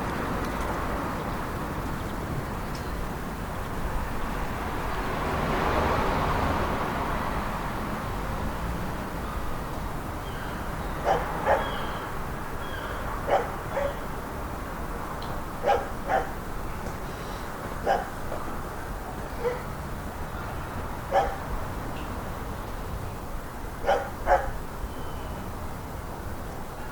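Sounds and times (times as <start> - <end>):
vehicle passing: 0.0 - 25.9
distant traffic: 0.0 - 26.9
dog barking: 11.0 - 11.9, 13.2 - 14.1, 15.6 - 16.4, 17.8 - 18.2, 19.4 - 19.7, 21.1 - 21.5, 23.8 - 24.6.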